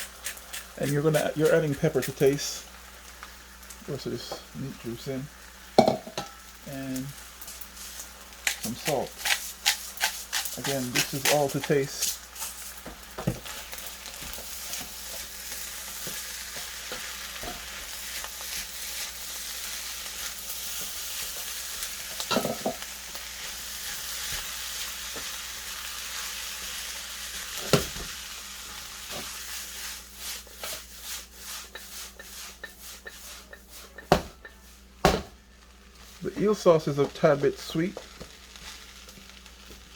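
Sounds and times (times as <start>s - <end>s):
rice sizzling in a pan: 0.0s - 39.9s
utensil knocking and scraping pan: 30.2s - 35.3s.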